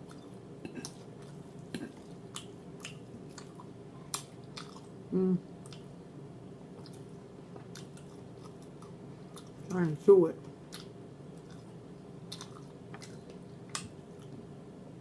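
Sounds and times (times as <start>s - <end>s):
chewing fried chicken: 0.0s - 6.0s, 6.6s - 14.5s
person humming: 5.1s - 5.5s.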